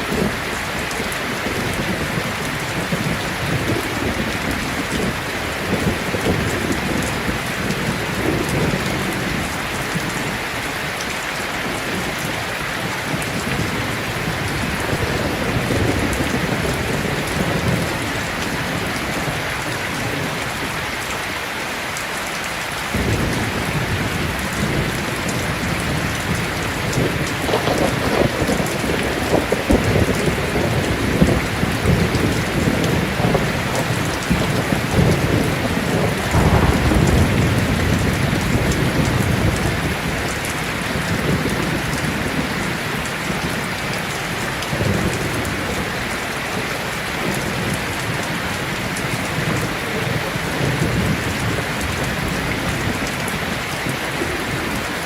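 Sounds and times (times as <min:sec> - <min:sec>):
rolling thunder: 0:00.0 - 0:10.5, 0:11.9 - 0:20.7, 0:22.9 - 0:46.1
heavy rain falling: 0:00.0 - 0:55.0.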